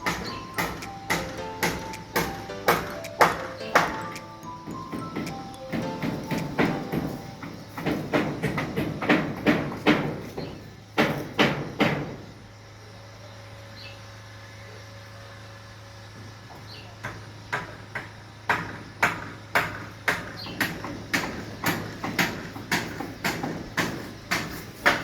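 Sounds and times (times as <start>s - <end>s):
hammer blows: 0.0s - 12.2s.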